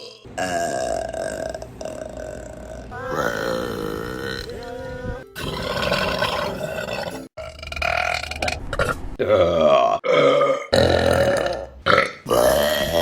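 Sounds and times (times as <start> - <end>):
women burping loudly: 0.0 - 8.2.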